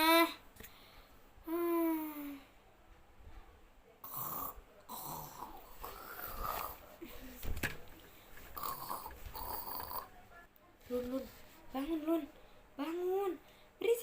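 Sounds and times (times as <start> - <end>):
person snoring: 4.0 - 6.8, 8.6 - 10.1.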